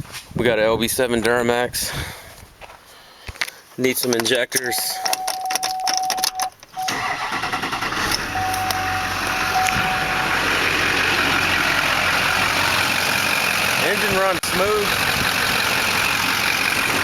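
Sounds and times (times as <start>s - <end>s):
diesel engine starting and idling: 6.4s - 17.0s.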